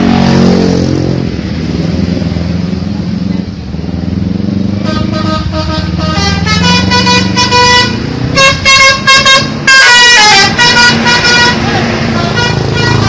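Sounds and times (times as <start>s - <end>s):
multi-tone bus horn melody: 4.8s - 13.0s.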